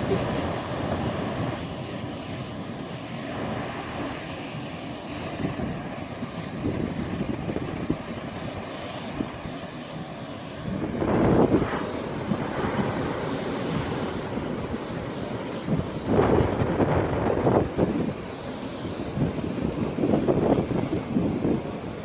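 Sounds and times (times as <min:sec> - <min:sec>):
ocean surf washing on shore: 0:00.0 - 0:22.0
wind buffeting microphone: 0:05.1 - 0:09.8, 0:10.5 - 0:22.0.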